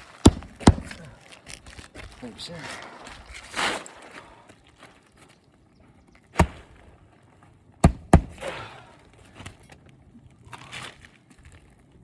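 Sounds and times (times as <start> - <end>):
nails driven into roof shingles: 0.2 - 1.0, 7.8 - 8.6.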